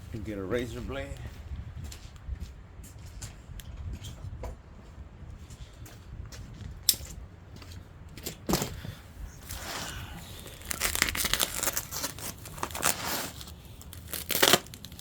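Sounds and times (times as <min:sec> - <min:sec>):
packaging tearing and crinkling: 0:09.4 - 0:15.0.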